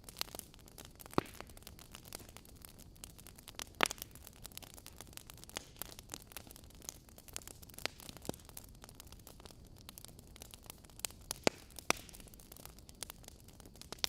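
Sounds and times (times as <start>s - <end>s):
sharp pops from fire: 0.0s - 14.0s
wood fire crackling: 0.0s - 14.0s.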